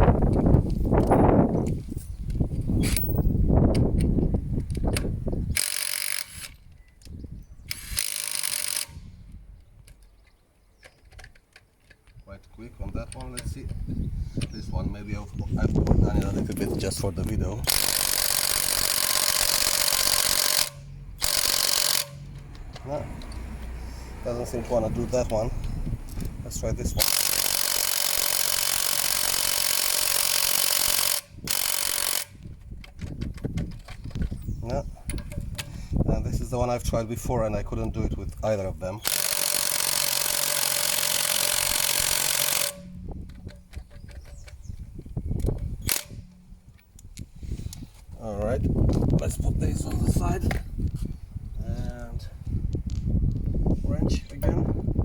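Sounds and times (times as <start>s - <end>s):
impact wrench hammering: 17.6s - 22.4s, 27.0s - 32.4s, 39.0s - 43.8s.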